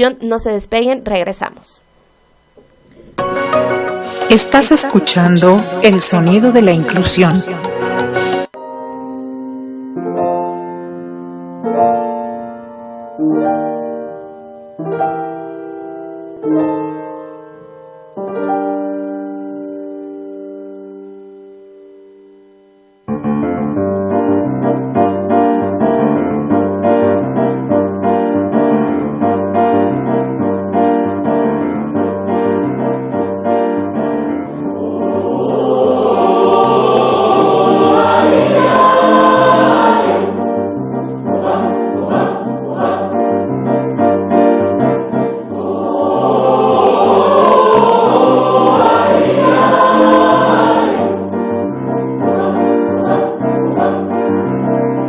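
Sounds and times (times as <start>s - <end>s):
keyboard: 2.4s - 55.0s
group of voices singing: 4.2s - 7.7s, 34.6s - 40.6s, 41.3s - 43.7s, 45.4s - 51.4s, 52.2s - 54.4s.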